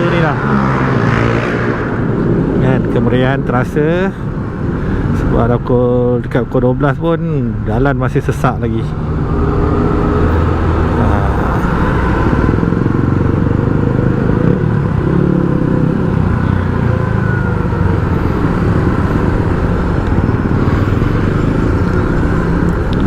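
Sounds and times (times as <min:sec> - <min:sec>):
motorcycle engine running: 0:12.0 - 0:23.0.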